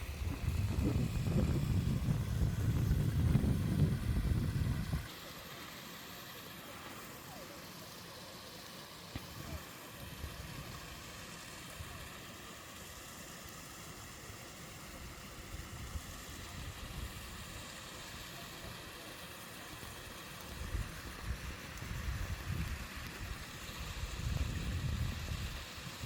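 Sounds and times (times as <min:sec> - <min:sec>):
wind buffeting microphone: 0:00.0 - 0:05.1, 0:24.0 - 0:25.6.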